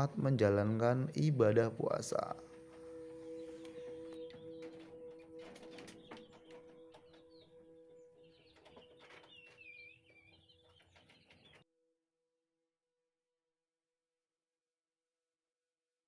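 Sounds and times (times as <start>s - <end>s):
faint birds chirping: 0.0s - 11.7s.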